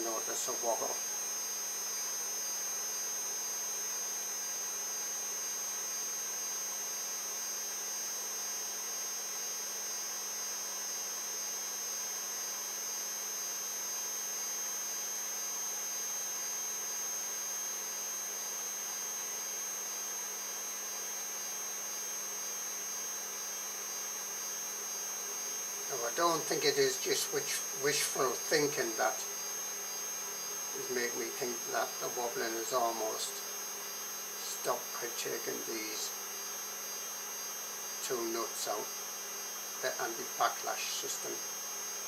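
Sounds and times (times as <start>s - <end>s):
printer electrical hum: 0.0s - 42.0s
high thin whine: 25.9s - 29.6s, 30.7s - 33.5s, 34.4s - 36.2s.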